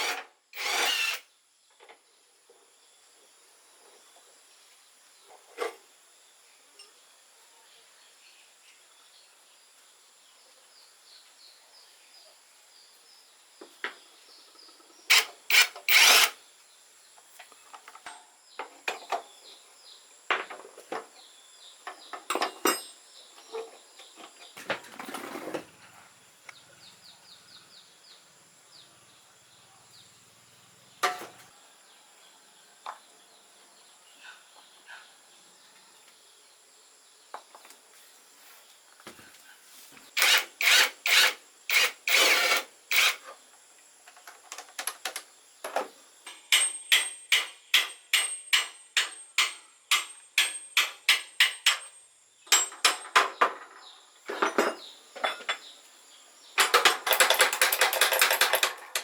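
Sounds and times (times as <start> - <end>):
insects chirping: 0.0 - 59.0
hand tools clicking and knocking: 15.1 - 16.4, 21.9 - 25.3, 40.2 - 43.3, 44.1 - 55.7, 56.6 - 59.0.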